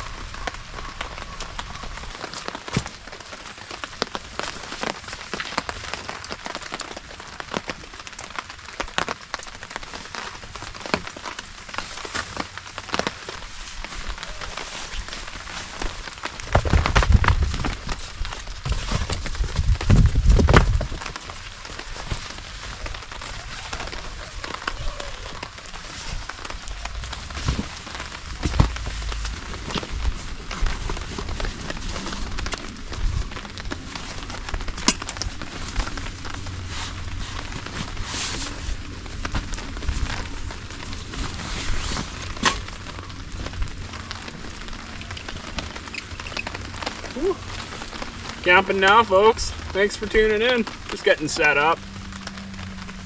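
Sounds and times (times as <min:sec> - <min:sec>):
sharp raindrops landing close: 0:00.0 - 0:53.0
steady rain: 0:00.0 - 0:53.0
dull thumps: 0:26.8 - 0:31.0.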